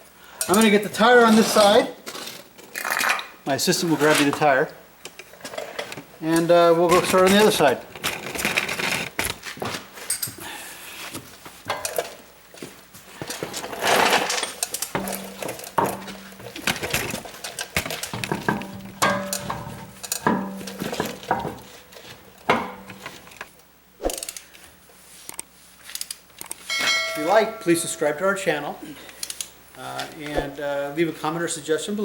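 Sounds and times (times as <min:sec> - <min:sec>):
metal tools clinking: 0:00.4 - 0:03.2, 0:13.6 - 0:23.4, 0:26.6 - 0:28.5.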